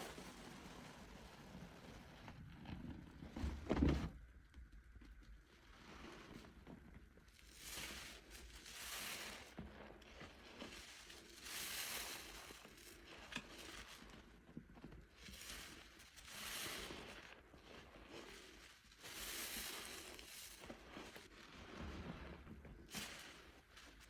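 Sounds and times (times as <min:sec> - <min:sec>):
foam popping and crackling: 0:00.0 - 0:24.0
wet squish of soap foam: 0:05.1 - 0:24.0.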